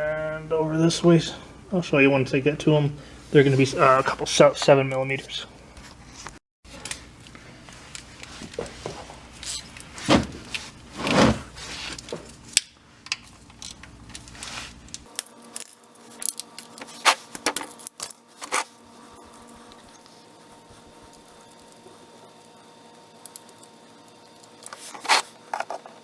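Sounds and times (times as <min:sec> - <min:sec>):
metal scraping: 0:15.2 - 0:26.0.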